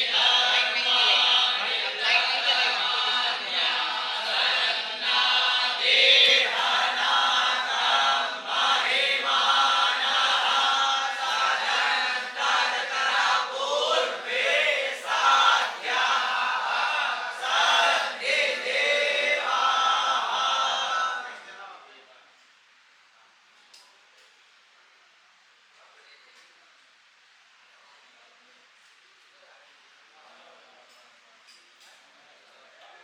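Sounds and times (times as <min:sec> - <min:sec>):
group chanting in unison: 0:00.0 - 0:21.6.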